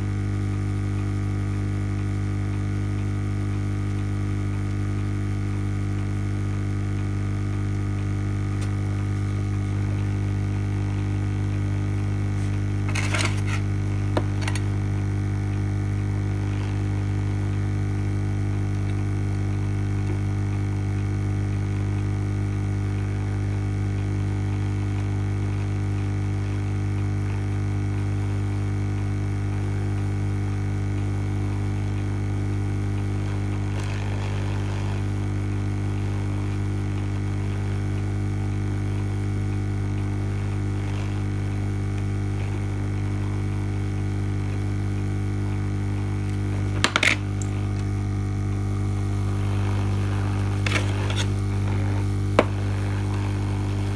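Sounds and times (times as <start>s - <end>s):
hot air station blowing: 48.7s - 53.9s.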